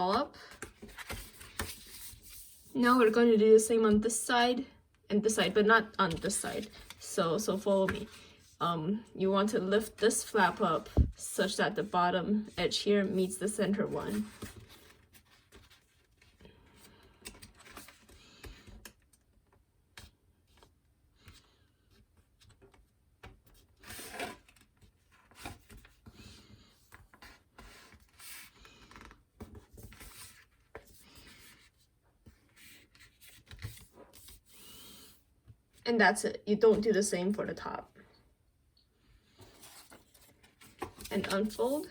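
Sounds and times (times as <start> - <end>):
paper folding and rustling: 0.0 - 2.7, 6.1 - 7.0, 13.8 - 19.3, 20.0 - 34.8, 39.3 - 41.9.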